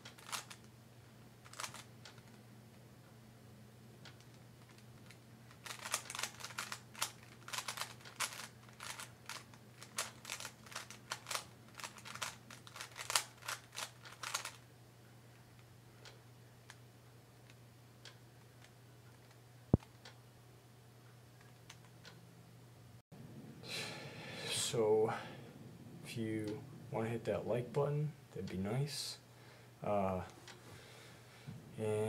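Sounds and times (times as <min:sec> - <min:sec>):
puzzle cube plastic clicks: 0:00.1 - 0:00.7, 0:01.4 - 0:02.4, 0:04.2 - 0:14.6.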